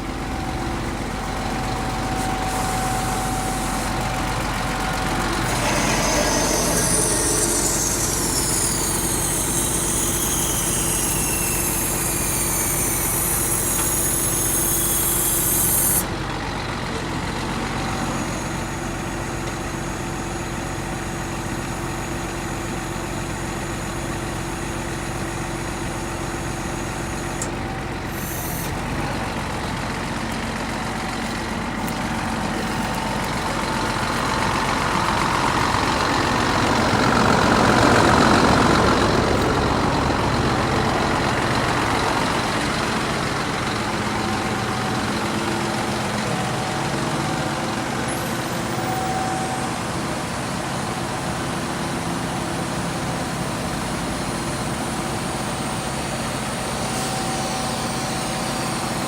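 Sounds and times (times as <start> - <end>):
heavy diesel engine running: 0.0 - 59.0
high whining sweeps: 0.8 - 16.0.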